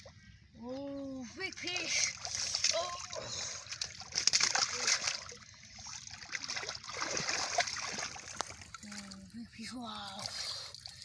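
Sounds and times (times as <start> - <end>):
hands splashing in shallow water: 2.1 - 9.1.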